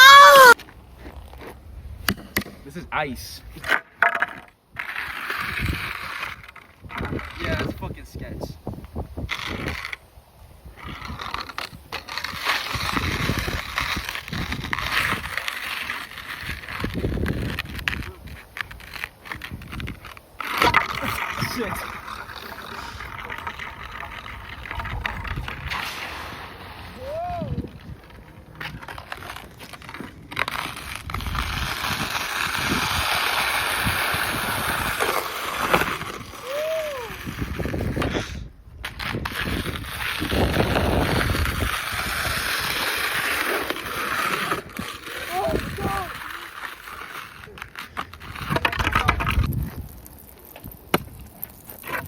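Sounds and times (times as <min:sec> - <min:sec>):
skateboard wheels on icy pavement: 0:00.0 - 0:52.0
skateboard knocks: 0:03.6 - 0:04.5.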